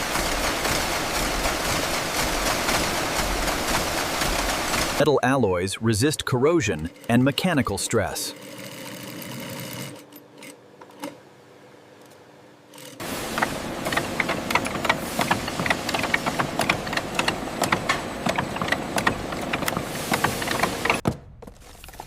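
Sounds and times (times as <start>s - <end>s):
machinery clattering with rapid clicks: 0.0s - 5.1s, 12.7s - 21.0s.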